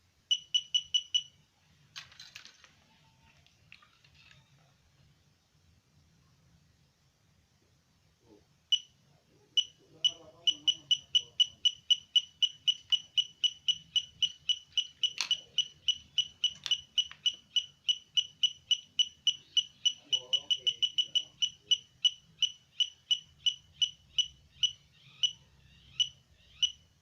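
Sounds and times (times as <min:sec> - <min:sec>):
metal detector beeping: 0:00.3 - 0:01.4, 0:09.6 - 0:26.8.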